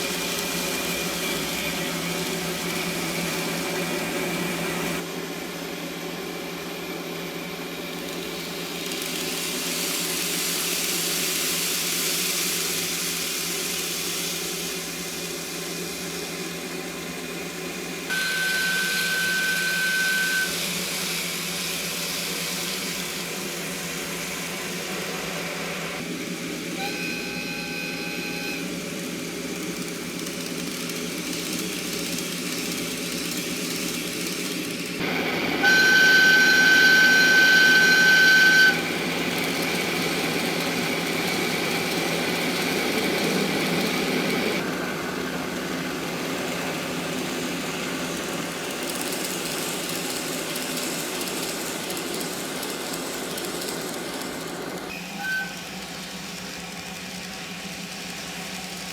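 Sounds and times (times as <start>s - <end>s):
diesel locomotive engine running: 0.0s - 58.9s
locomotive horn blast: 35.6s - 38.8s.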